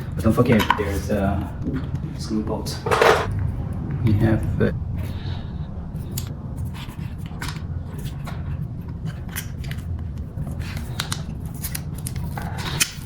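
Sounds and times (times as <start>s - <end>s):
steady low hum: 0.0s - 12.5s
adhesive tape clicking and crinkling: 9.2s - 13.0s.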